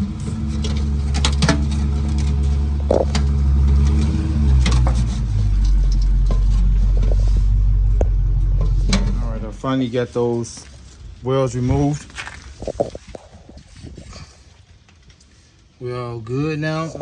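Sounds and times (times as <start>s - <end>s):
sharp metallic clicks and scrapes: 0.0s - 9.6s.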